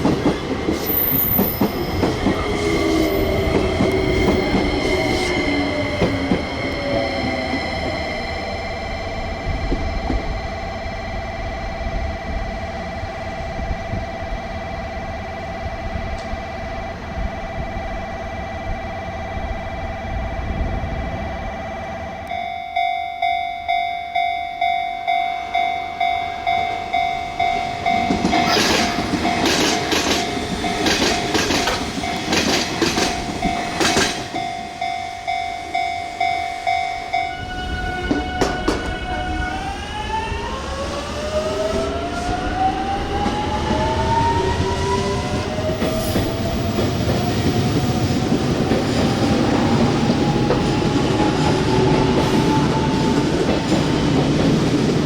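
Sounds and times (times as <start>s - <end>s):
train wheels clacking on rail joints: 0.0s - 8.0s, 27.4s - 34.6s, 38.0s - 39.1s
electric train motor whine: 0.6s - 22.4s
level crossing bell ringing: 22.3s - 32.4s, 33.3s - 37.6s.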